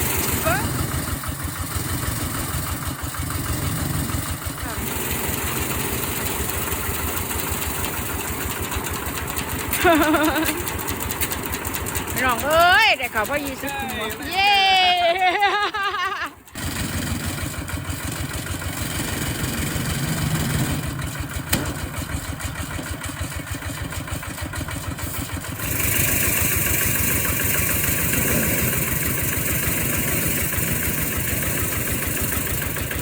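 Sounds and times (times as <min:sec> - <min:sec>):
threshing machine engine pulsing: 0:00.0 - 0:15.5, 0:16.2 - 0:33.0.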